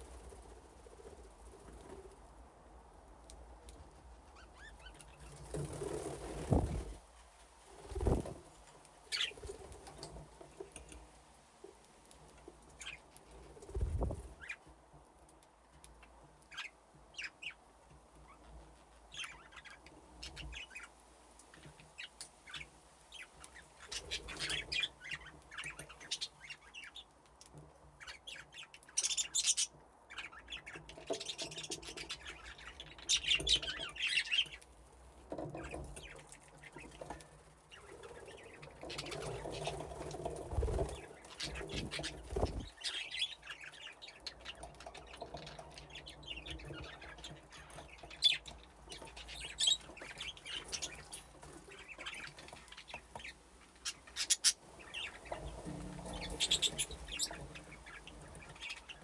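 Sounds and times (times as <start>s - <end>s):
budgerigars chirping and chattering: 9.1s - 9.6s, 19.1s - 20.9s, 21.6s - 27.1s, 28.0s - 34.6s, 37.7s - 59.0s.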